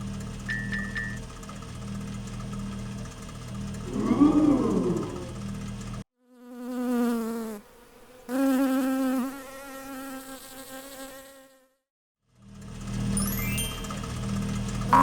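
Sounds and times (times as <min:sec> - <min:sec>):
steady hum: 0:00.0 - 0:06.0
housefly buzzing: 0:06.2 - 0:11.8.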